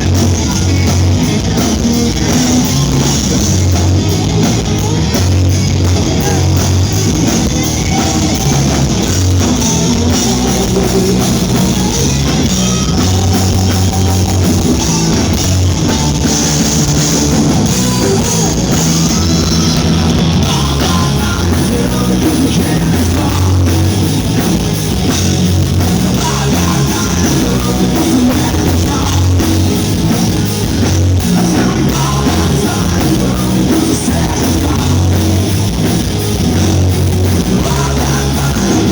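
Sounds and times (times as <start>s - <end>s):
person singing: 0.0s - 24.5s, 25.3s - 30.2s, 31.2s - 35.7s, 37.2s - 38.9s
drum kit: 0.0s - 38.9s
electric guitars: 0.0s - 38.9s.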